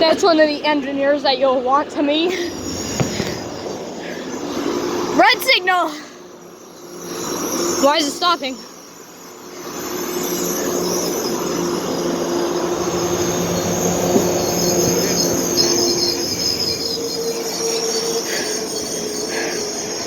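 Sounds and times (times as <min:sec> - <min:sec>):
train brakes squealing: 0:02.3 - 0:05.3, 0:05.9 - 0:20.0
low locomotive drone: 0:09.6 - 0:20.0.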